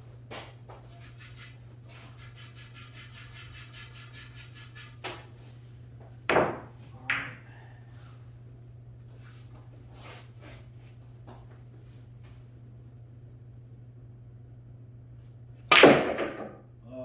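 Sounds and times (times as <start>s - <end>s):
steady low hum: 0.0s - 17.0s
light rhythmic scraping: 0.3s - 5.6s.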